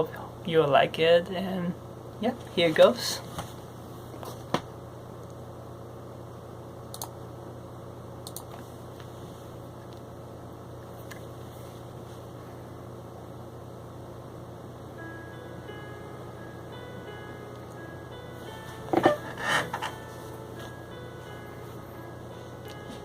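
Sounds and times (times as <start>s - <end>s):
low electrical hum: 0.0s - 23.0s
short clicks: 6.9s - 7.2s.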